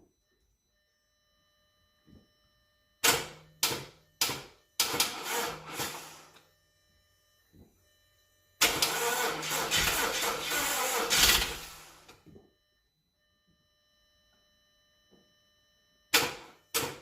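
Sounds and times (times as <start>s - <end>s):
car engine cranking without starting: 8.6s - 11.9s.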